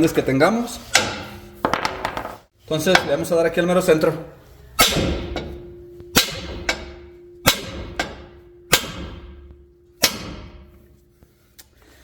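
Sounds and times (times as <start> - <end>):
sledgehammer striking steel: 0.8 - 2.3, 4.8 - 10.9.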